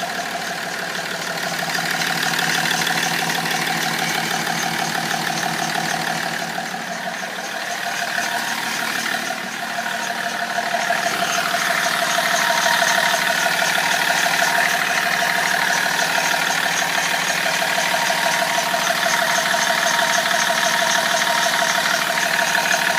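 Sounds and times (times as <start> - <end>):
diesel engine idling: 0.0 - 22.9.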